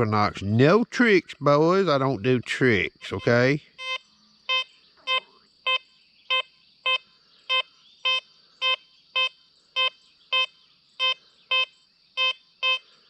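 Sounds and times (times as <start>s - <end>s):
metal detector low beeps: 3.0s - 12.9s.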